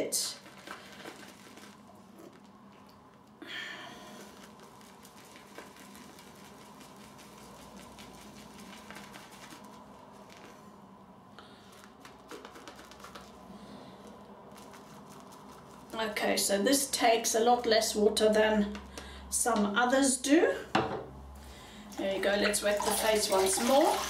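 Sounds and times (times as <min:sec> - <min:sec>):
shaving brush wet swishing: 0:04.2 - 0:10.6, 0:22.0 - 0:24.0.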